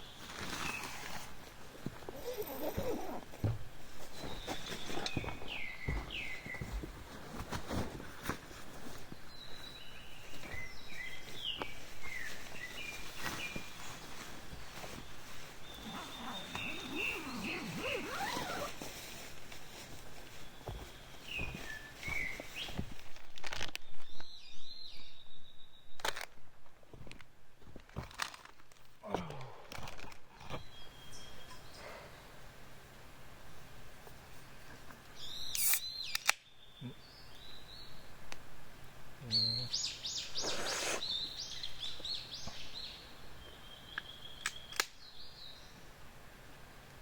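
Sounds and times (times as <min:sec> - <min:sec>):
knocks and rustles of handling: 0:00.1 - 0:24.4, 0:26.0 - 0:31.7
footsteps: 0:00.2 - 0:23.7
bird chirping: 0:15.6 - 0:18.7, 0:30.5 - 0:32.1, 0:35.2 - 0:38.2, 0:39.2 - 0:45.8
sharp clicks: 0:35.5 - 0:36.4
faint chirps: 0:39.2 - 0:42.8.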